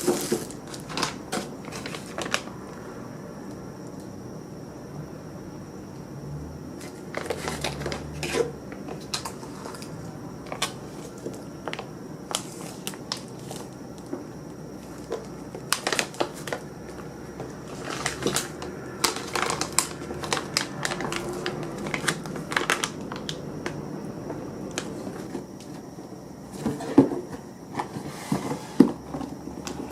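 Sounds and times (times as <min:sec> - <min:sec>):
crinkling: 0:00.0 - 0:02.5, 0:14.8 - 0:16.7, 0:17.4 - 0:23.4.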